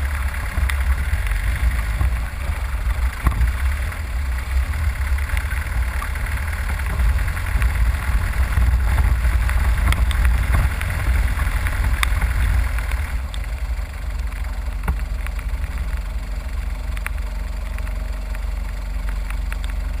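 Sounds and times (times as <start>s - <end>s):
engine rumbling at low revs: 0.0s - 20.0s.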